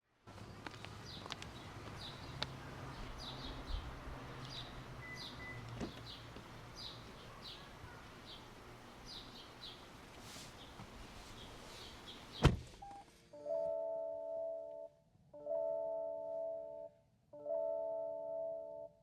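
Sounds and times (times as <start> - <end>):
bird chirping: 0.4 - 9.9, 10.5 - 12.5.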